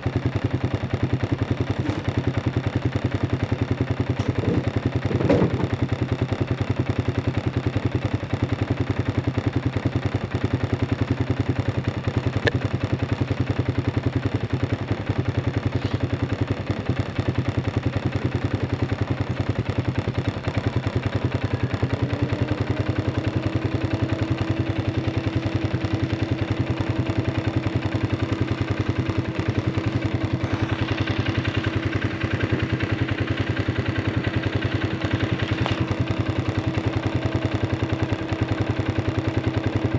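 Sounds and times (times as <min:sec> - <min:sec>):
engine running with fast pulsing: 0:00.0 - 0:39.9
steady whine: 0:15.6 - 0:39.9.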